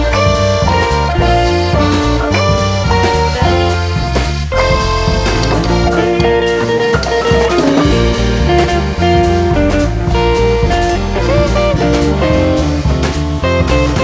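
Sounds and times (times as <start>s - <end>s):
bluesy guitar music with drums: 0.0s - 14.0s.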